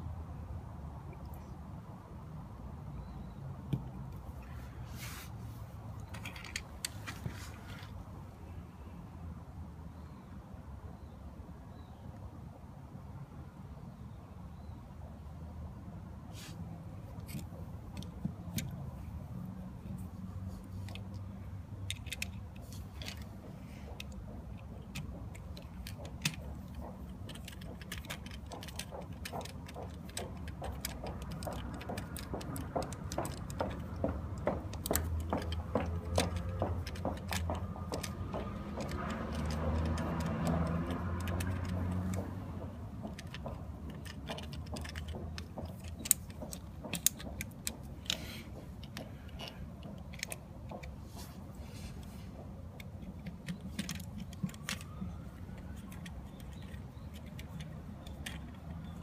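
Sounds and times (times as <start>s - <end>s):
metal tools clicking and clinking: 6.0s - 6.9s, 21.8s - 42.3s
rapid evenly spaced ticks: 20.9s - 51.0s.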